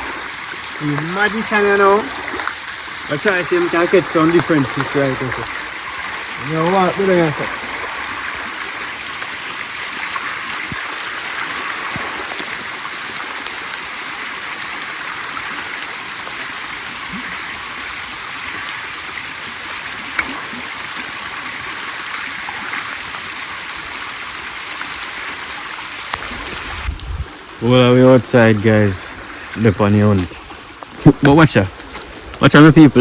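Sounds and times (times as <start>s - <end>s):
water hissing: 0.0s - 23.1s.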